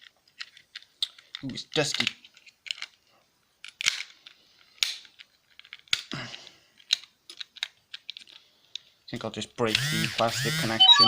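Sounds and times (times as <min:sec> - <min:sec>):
plastic casing clicking and cracking: 0:00.0 - 0:03.0, 0:03.6 - 0:06.2, 0:06.8 - 0:08.9.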